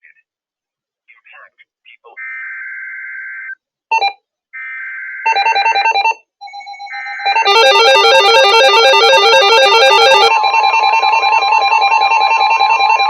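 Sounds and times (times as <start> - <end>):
alert signal alternating tones: 6.8 - 13.0
fast warbling tones: 6.9 - 13.0.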